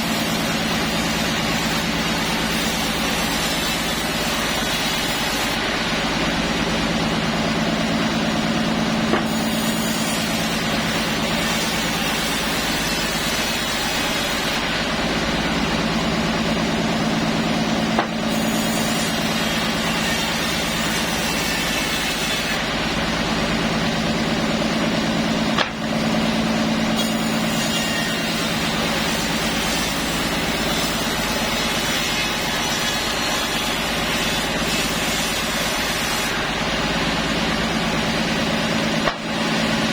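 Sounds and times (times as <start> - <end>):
sawmill saw cutting wood: 0.0 - 39.9.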